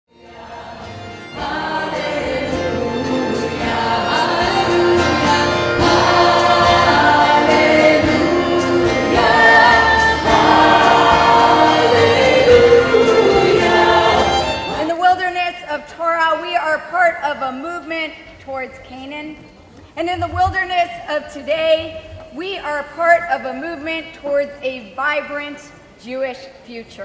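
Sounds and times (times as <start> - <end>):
choir singing: 0.1 - 15.0.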